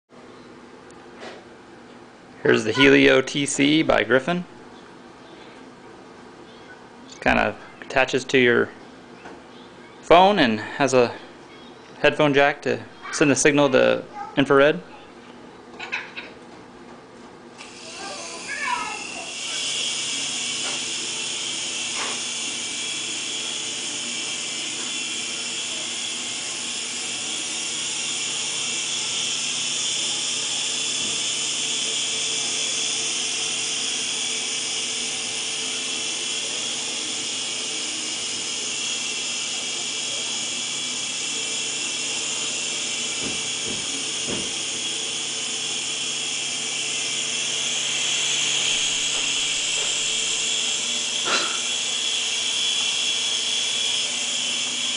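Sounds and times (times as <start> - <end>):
toy helicopter rotors whirring: 17.6 - 54.9.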